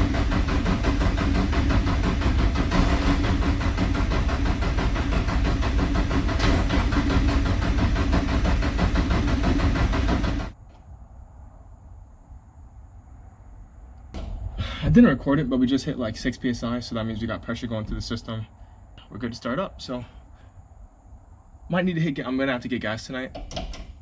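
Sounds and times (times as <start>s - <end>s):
engine cranking on starter: 0.0s - 10.6s.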